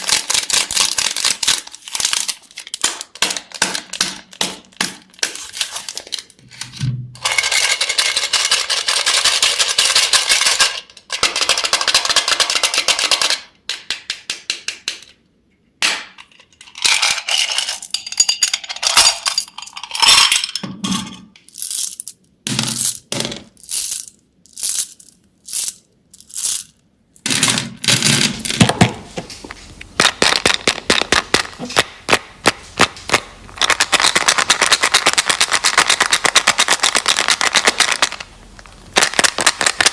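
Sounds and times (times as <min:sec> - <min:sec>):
candy crackling and clicking: 0:00.0 - 0:06.4, 0:21.4 - 0:26.8, 0:30.0 - 0:39.9.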